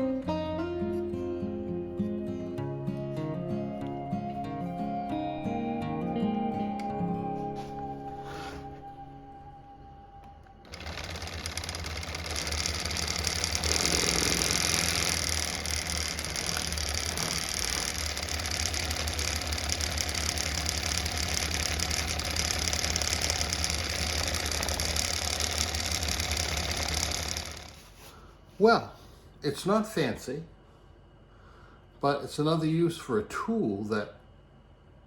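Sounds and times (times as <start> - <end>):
guitar music: 0.0 - 10.6
oscillating multitool buzzing: 8.0 - 27.9.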